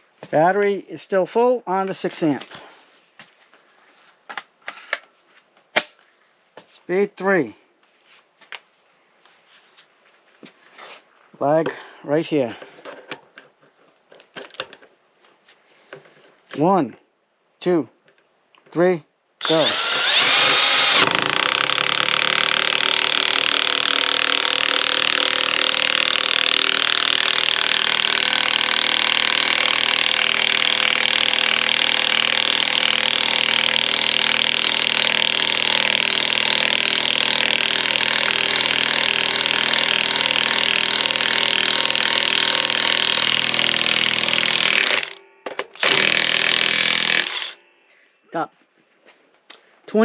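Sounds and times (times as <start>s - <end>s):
impact wrench driving screw into wood: 19.4s - 47.6s.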